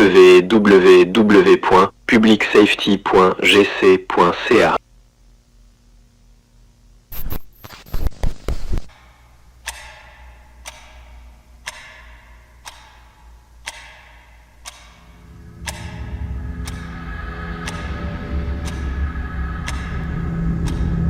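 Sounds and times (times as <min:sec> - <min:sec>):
clock ticking: 0:10.6 - 0:16.9
low drone: 0:15.0 - 0:21.0.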